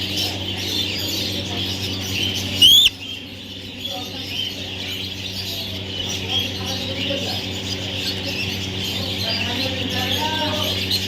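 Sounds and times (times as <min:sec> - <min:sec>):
parrot squeaky chirps: 0:02.6 - 0:03.0.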